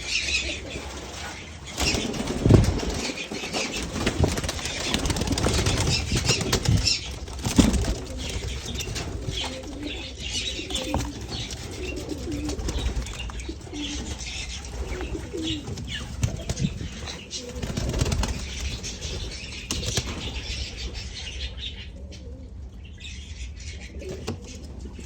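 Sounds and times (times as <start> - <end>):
parakeets chirping: 0.0 - 21.9
pigeons cooing: 0.0 - 25.0
pigeons flapping wings: 0.6 - 20.5.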